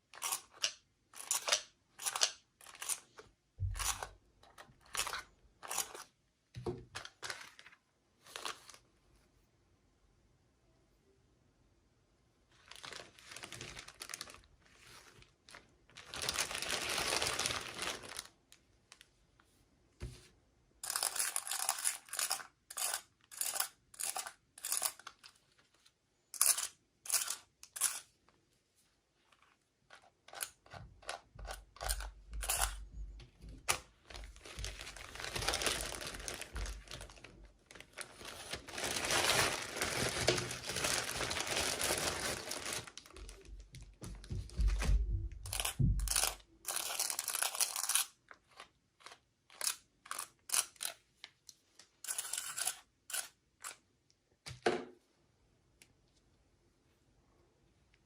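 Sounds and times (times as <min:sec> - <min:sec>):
plastic packaging crinkling: 0:06.9 - 0:08.8, 0:12.6 - 0:19.0, 0:33.7 - 0:51.0
plastic crackles: 0:12.5 - 0:19.1, 0:33.5 - 0:52.7.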